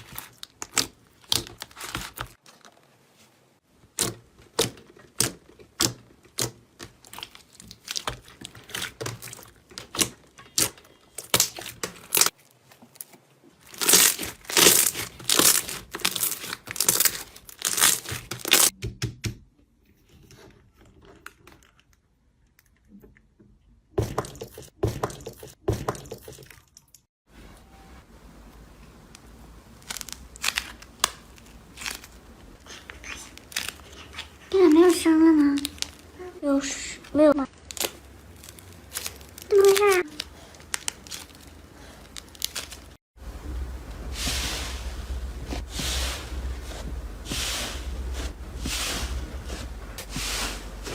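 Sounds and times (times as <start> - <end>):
slime squeezed by hand crackling: 37.6 - 43.0.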